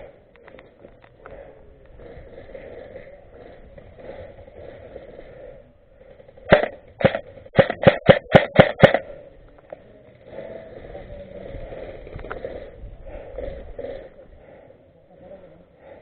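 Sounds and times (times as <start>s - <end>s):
airsoft gun shots: 6.5s - 9.2s.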